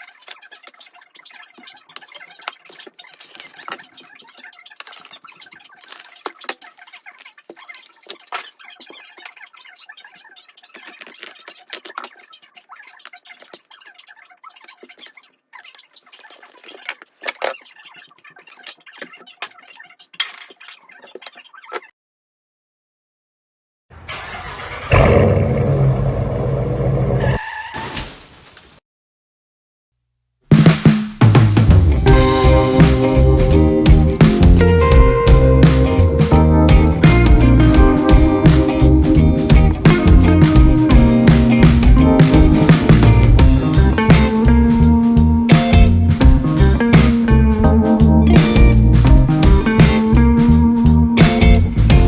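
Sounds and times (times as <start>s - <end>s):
packaging crinkling: 1.7s - 9.4s, 10.5s - 19.0s.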